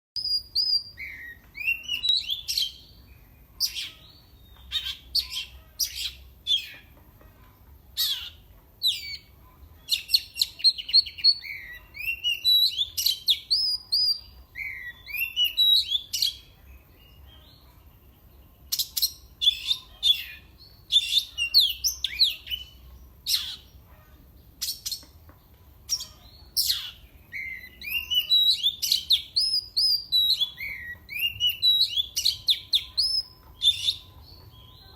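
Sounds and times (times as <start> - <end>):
bird singing whistles and chirps: 0.2 - 6.8, 9.9 - 17.4, 18.7 - 23.7, 25.9 - 34.9.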